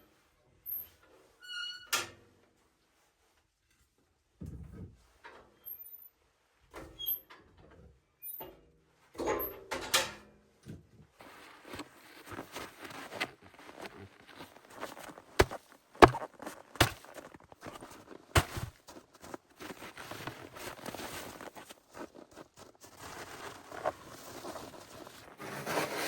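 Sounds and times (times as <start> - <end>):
objects handled knocking and rustling: 10.6 - 25.4.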